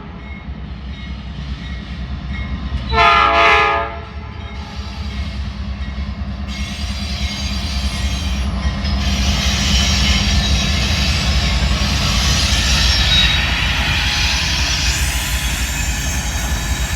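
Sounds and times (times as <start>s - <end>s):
locomotive rumble: 4.1s - 16.9s
high wheel squeal: 6.5s - 16.9s.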